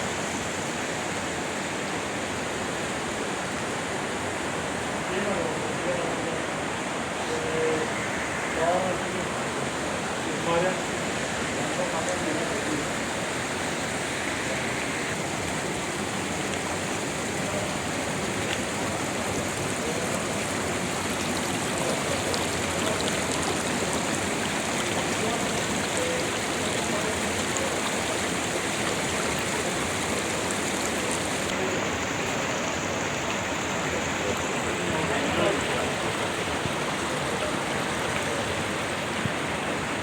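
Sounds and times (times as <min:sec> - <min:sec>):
stream rushing over rocks: 0:00.0 - 0:40.0.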